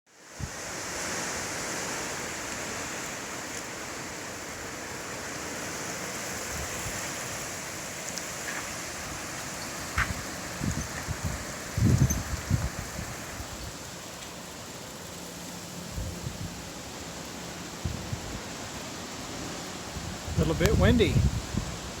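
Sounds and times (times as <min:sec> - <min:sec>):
wind rustling leaves in trees: 0:00.1 - 0:22.0
wind buffeting microphone: 0:08.7 - 0:13.9, 0:15.9 - 0:16.7, 0:17.8 - 0:22.0.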